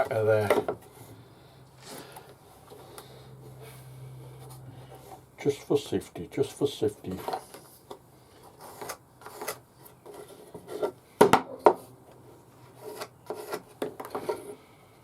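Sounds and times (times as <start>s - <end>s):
wood rubbed and scraped by hand: 12.6s - 14.6s.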